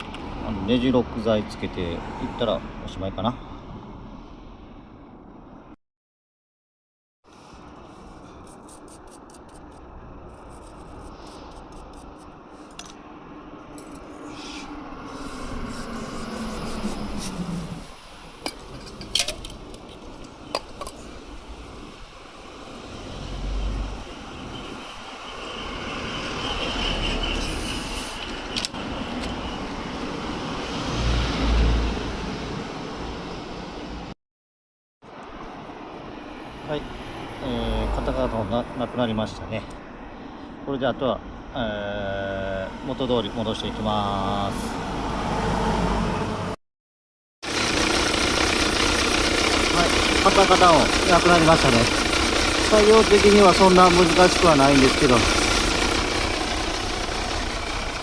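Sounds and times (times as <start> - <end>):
tools rubbing and scraping: 7.3 - 13.0, 13.8 - 20.0
motorcycle engine running: 47.5 - 58.0.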